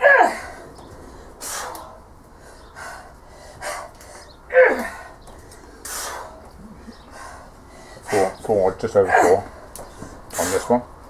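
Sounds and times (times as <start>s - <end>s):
woman grunting: 0.0s - 0.6s, 4.5s - 5.1s, 9.1s - 9.5s
woman breathing forcefully: 0.0s - 8.4s, 9.1s - 10.7s.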